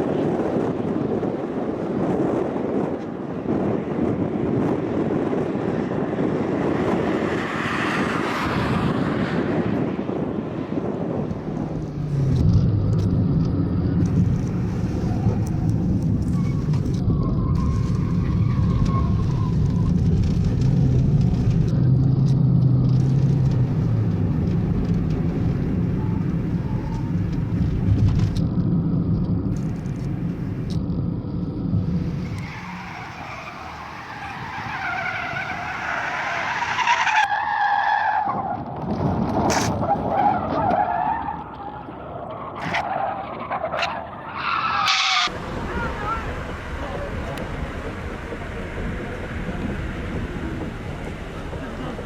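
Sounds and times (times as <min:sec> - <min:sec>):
car engine at high revs: 0:02.0 - 0:37.2, 0:43.6 - 0:52.0
broad rushing noise: 0:45.0 - 0:52.0.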